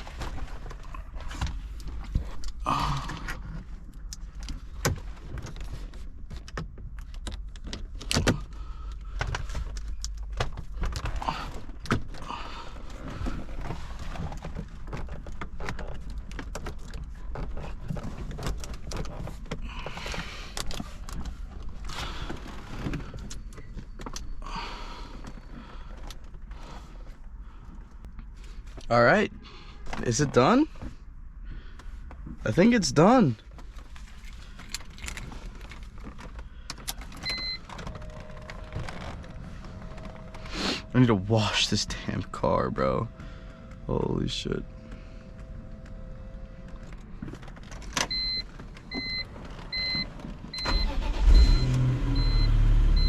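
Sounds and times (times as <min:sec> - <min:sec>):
hands handling car parts: 0:00.0 - 0:28.9, 0:29.8 - 0:42.3.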